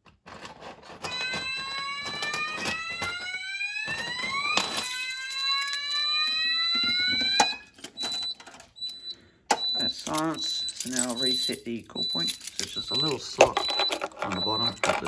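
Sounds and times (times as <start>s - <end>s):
fire alarm wail: 1.0s - 15.0s
steady high beep: 8.0s - 15.0s.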